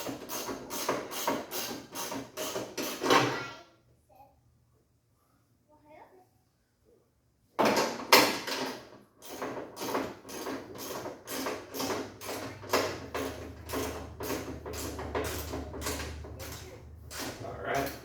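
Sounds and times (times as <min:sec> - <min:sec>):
ratchet wrench clicking: 0:13.2 - 0:18.0.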